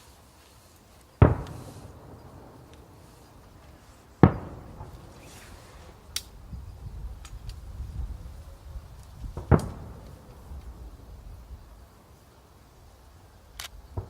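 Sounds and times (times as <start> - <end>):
faint sharp cracks: 0.4 - 6.4, 8.9 - 10.8, 13.5 - 14.0
firework booms with rumble: 1.2 - 6.0, 9.2 - 11.2.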